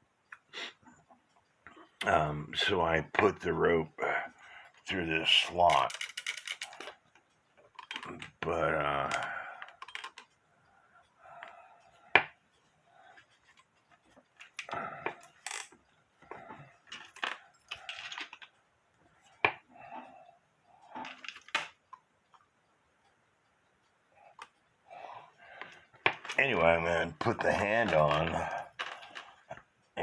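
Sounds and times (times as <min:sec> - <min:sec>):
small metal parts clicking: 0:05.7 - 0:08.4, 0:09.0 - 0:10.4, 0:14.4 - 0:15.8, 0:16.8 - 0:18.6, 0:27.2 - 0:29.6.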